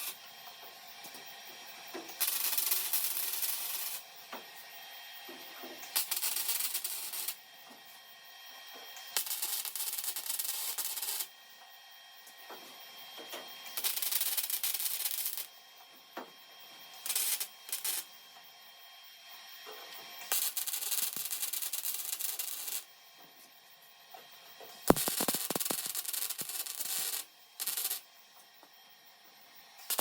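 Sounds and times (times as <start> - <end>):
crackling welding arc: 0.0 - 0.2, 2.1 - 4.1, 5.8 - 7.4, 9.0 - 11.3, 13.7 - 15.5, 17.0 - 18.2, 20.2 - 22.9, 24.8 - 28.1, 29.8 - 30.0.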